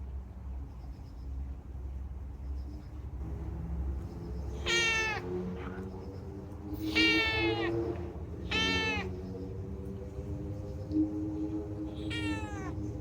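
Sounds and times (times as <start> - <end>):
cat meowing: 4.5 - 5.9, 6.8 - 9.2, 11.8 - 12.8.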